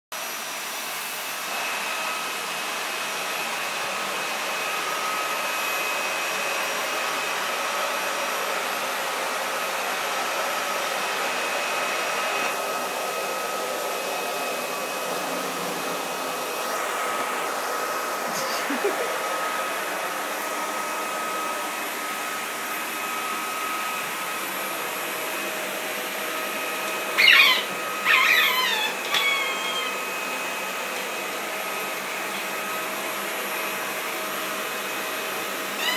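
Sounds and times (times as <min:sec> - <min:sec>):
vacuum cleaner running: 0:00.2 - 0:35.9
squeaky toy squeaks: 0:27.2 - 0:29.9.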